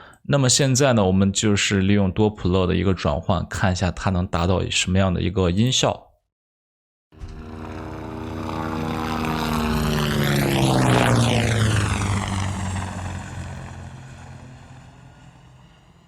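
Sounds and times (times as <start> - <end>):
helicopter flying over: 7.2 - 16.0.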